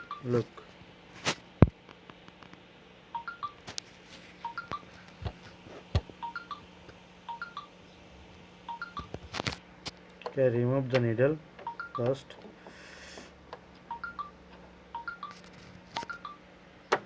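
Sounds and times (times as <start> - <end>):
high chirping notes: 0.0 - 0.4, 3.2 - 3.6, 4.5 - 4.8, 6.2 - 6.7, 7.3 - 7.8, 8.7 - 9.1, 11.7 - 12.2, 13.9 - 14.4, 15.0 - 15.4.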